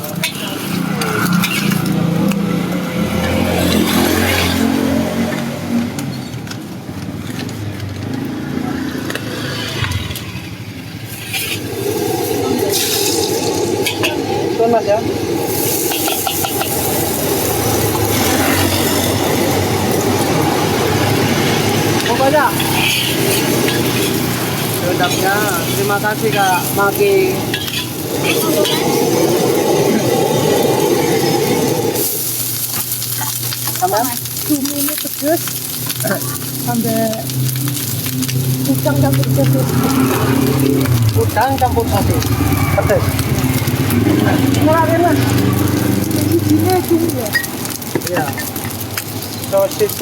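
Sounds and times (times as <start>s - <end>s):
food sizzling: 0.0s - 50.0s
street noise: 0.0s - 50.0s
wok rumbling roar: 0.0s - 50.0s
loud hissing: 9.4s - 47.0s
vehicle engine running: 32.9s - 47.8s.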